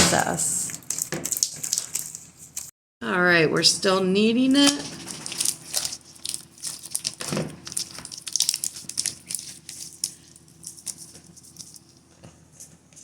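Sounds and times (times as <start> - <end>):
slime being kneaded by hand: 0.7 - 2.7, 4.6 - 13.0
sticky clicks and crackles: 0.7 - 2.7, 4.6 - 12.0.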